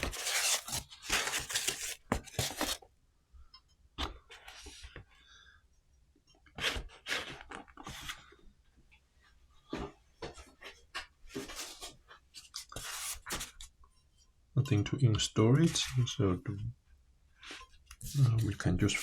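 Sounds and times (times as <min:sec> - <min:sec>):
packaging rustling and crinkling: 0:00.0 - 0:02.8.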